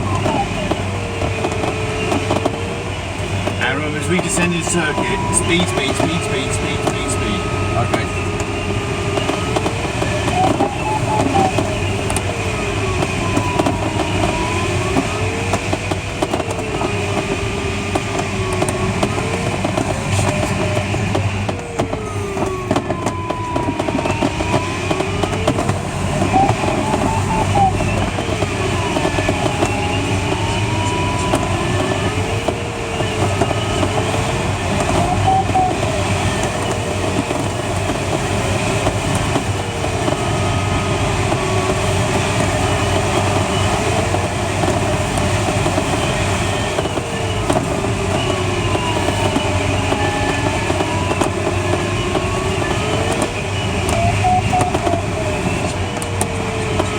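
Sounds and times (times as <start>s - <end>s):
airflow rushing around cockpit: 0.0s - 56.9s
electronic tone sliding in pitch: 4.1s - 9.5s.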